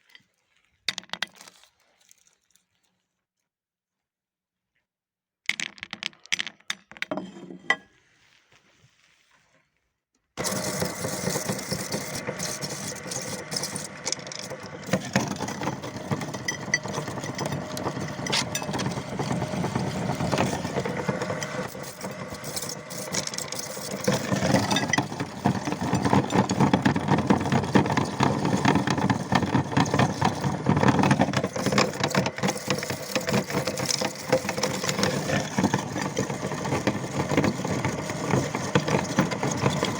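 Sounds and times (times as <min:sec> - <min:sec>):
electric meat grinder running: 0:10.4 - 0:39.9.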